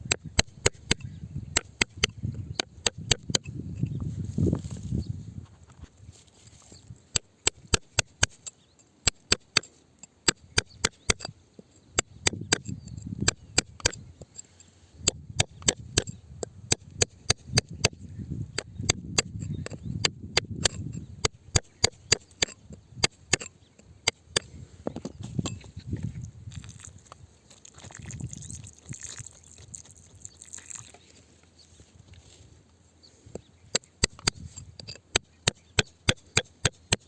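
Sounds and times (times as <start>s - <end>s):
digging tool striking rock: 0.0s - 3.9s, 7.1s - 11.4s, 12.0s - 14.4s, 15.0s - 30.9s, 33.3s - 37.0s
loose rock and dirt scraping: 0.0s - 11.4s, 18.5s - 36.8s.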